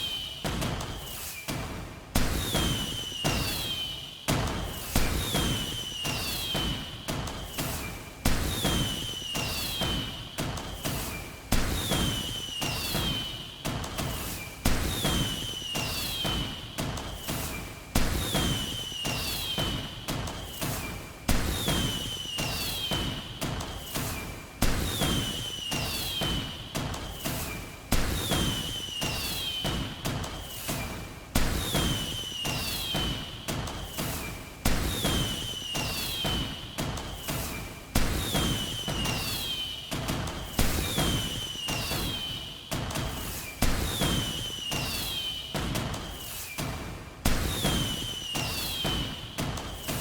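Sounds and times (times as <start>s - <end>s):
fireworks crackling: 2.2s - 3.9s, 4.5s - 6.8s, 7.4s - 13.4s, 14.0s - 50.0s
falling whistle: 2.6s - 4.0s, 5.2s - 6.8s, 15.5s - 16.4s, 22.0s - 23.1s, 31.6s - 33.2s, 35.2s - 36.5s, 38.2s - 39.9s, 40.9s - 42.5s, 44.1s - 45.5s, 47.5s - 49.2s
fireworks banging: 14.0s - 42.4s, 43.0s - 50.0s.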